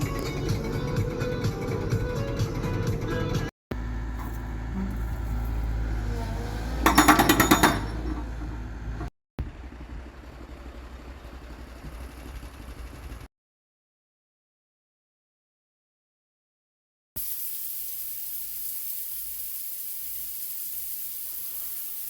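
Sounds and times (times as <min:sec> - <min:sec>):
excavator engine running: 0:00.0 - 0:13.3.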